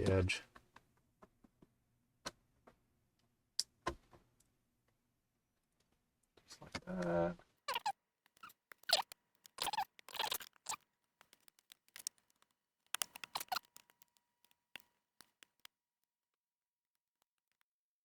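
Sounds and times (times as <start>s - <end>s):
cable handling scrapes and clicks: 7.7s - 15.7s.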